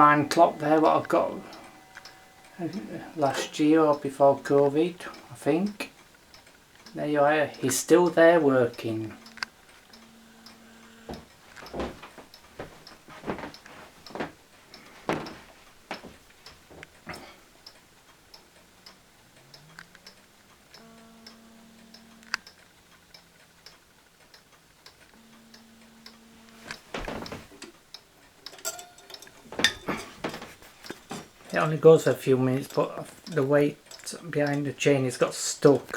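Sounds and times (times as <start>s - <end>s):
clock ticking: 0.0s - 35.9s.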